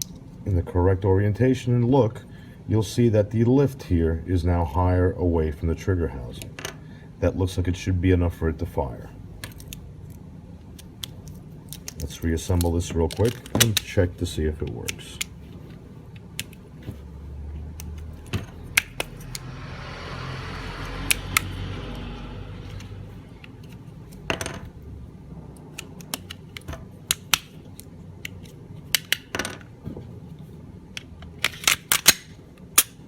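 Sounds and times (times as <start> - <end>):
pistol parts clicking and snapping: 9.4 - 14.0, 14.6 - 15.4, 16.1 - 16.7, 25.6 - 29.3, 31.0 - 33.0.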